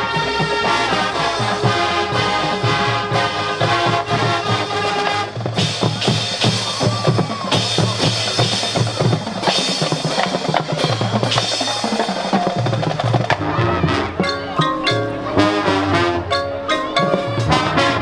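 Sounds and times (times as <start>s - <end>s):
brass section notes: 0.0s - 8.5s, 13.3s - 18.0s
snare and bass drum: 0.0s - 14.3s.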